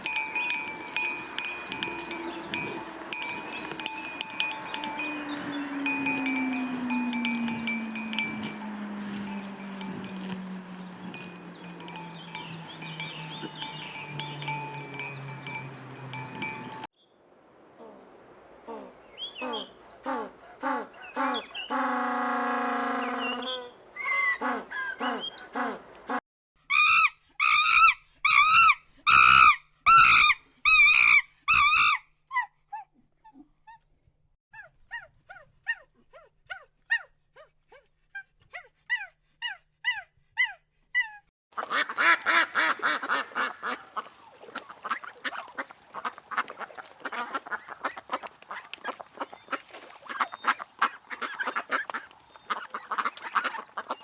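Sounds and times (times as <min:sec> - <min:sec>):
flock calling over one another: 0:18.6 - 0:26.2
short high thin calls: 0:18.6 - 0:26.2
geese honking: 0:18.7 - 0:26.2, 0:41.6 - 0:49.3.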